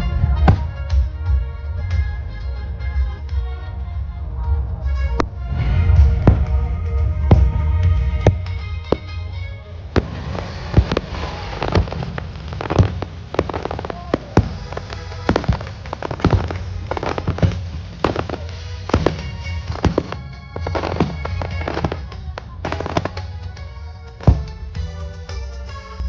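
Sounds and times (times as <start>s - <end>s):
fireworks banging: 0.0s - 3.5s, 4.9s - 26.0s
music playing: 0.0s - 26.0s.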